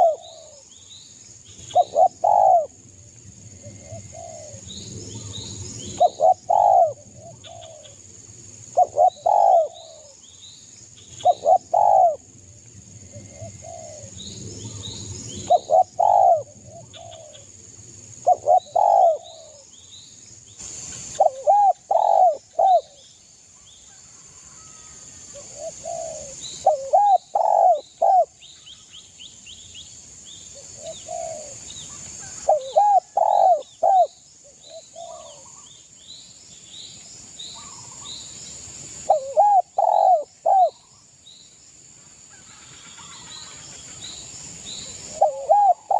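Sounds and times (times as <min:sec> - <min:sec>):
dove cooing: 0:00.0 - 0:00.6, 0:01.7 - 0:02.7, 0:03.6 - 0:05.4, 0:06.0 - 0:08.0, 0:08.8 - 0:10.2, 0:11.2 - 0:12.2, 0:13.1 - 0:17.4, 0:18.2 - 0:19.6, 0:21.2 - 0:23.0, 0:24.6 - 0:28.4, 0:30.8 - 0:31.6, 0:32.2 - 0:35.7, 0:39.1 - 0:40.9, 0:45.1 - 0:45.9
small birds chirping: 0:25.5 - 0:38.4.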